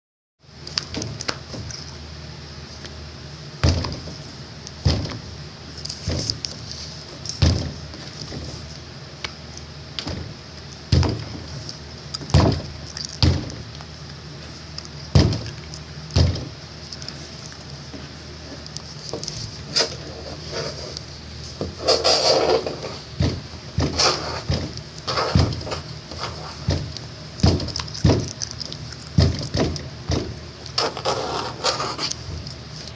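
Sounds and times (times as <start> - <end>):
steady low hum: 0.4 - 32.9
rustling and scratching: 5.7 - 8.9, 11.0 - 32.9
scrapes and knocks: 18.0 - 32.5.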